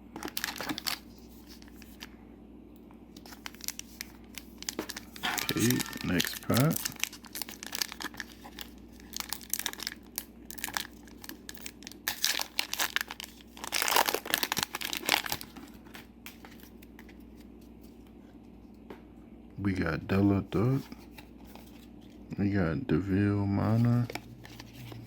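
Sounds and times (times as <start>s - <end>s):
wrapper crinkling and tearing: 0.2s - 2.1s, 3.2s - 17.2s, 24.0s - 25.0s.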